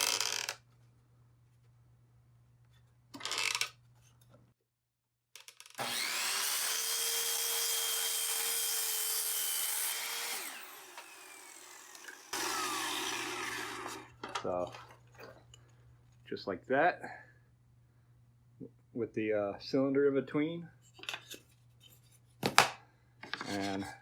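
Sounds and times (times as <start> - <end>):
power saw cutting wood: 5.8 - 14.2.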